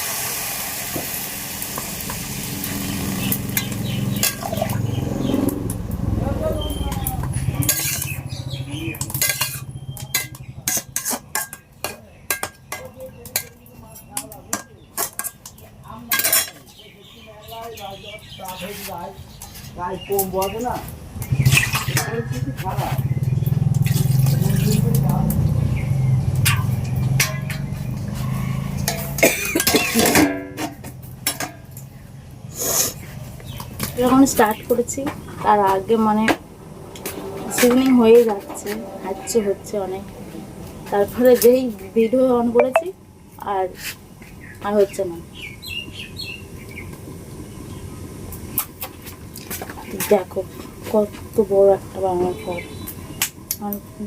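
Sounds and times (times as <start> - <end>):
metal utensils clinking on pot: 3.3 - 4.8, 6.9 - 8.2, 8.9 - 16.8, 21.4 - 22.6, 26.4 - 31.9.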